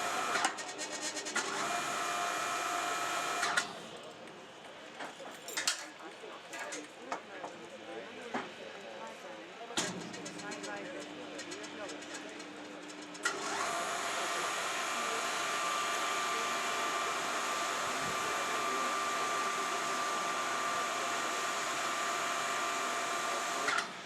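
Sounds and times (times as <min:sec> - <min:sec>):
machine whining over a hiss: 0:13.2 - 0:24.0.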